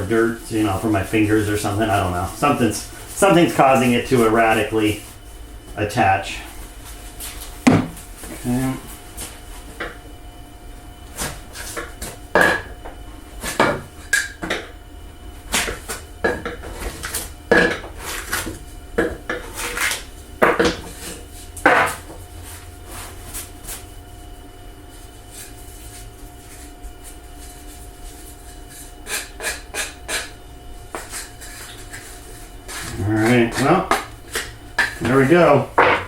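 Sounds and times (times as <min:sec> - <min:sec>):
low steady hum: 0:00.0 - 0:36.0
wooden pieces knocking together: 0:35.8 - 0:36.0.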